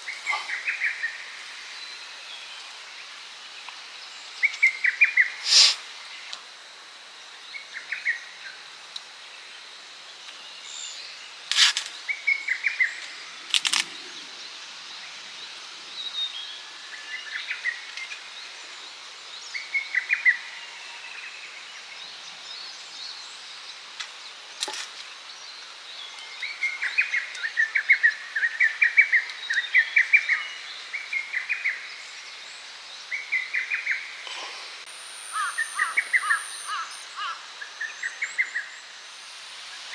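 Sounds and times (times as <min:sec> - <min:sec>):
small birds chirping: 0:00.0 - 0:06.4, 0:22.1 - 0:39.9
steady outdoor hiss: 0:00.0 - 0:39.9.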